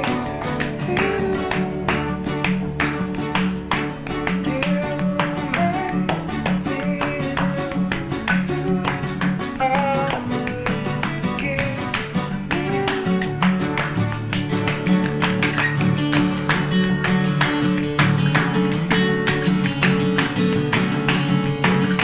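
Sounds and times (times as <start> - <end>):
flamenco-like acoustic guitar: 0.0 - 22.0.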